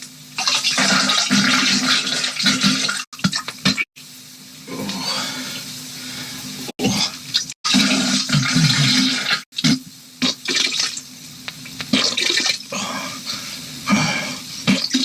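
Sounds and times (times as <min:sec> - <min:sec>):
toilet flushing: 0:00.4 - 0:03.9, 0:06.9 - 0:11.2, 0:11.8 - 0:13.5.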